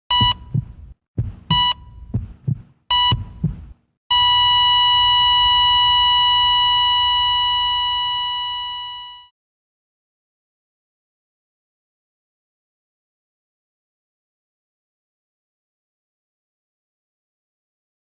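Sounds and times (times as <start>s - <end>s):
flatline tone: 0.1s - 2.3s, 2.9s - 9.3s
low double-thump heartbeat: 0.1s - 3.8s
heart monitor beeps: 0.1s - 9.3s.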